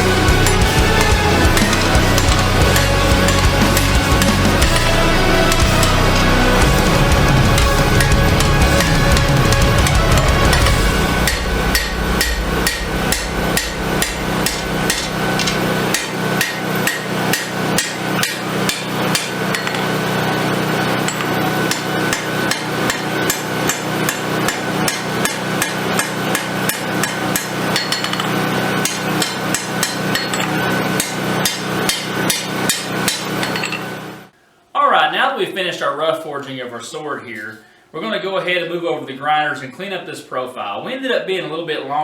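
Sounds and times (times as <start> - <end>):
steady low hum: 0.0 - 31.4
hammer blows on hot steel: 0.0 - 34.1.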